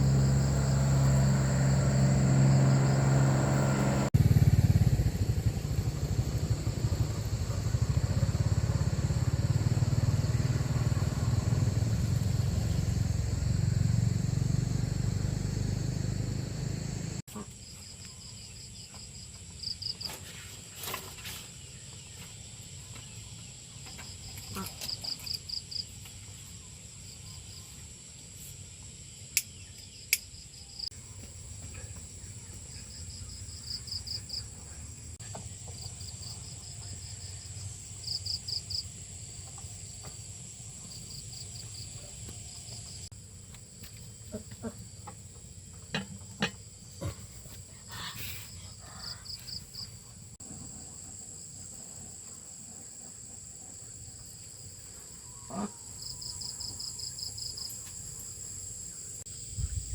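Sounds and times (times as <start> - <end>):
insects chirping in pulses: 0.0 - 4.1, 5.1 - 17.2, 28.9 - 59.9
high insect drone: 0.0 - 20.2, 20.8 - 59.9.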